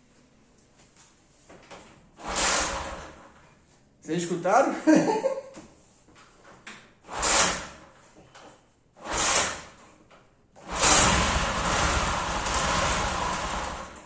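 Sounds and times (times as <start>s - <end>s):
motorcycle engine starting and running: 7.1s - 7.9s, 9.0s - 9.8s, 10.6s - 14.0s.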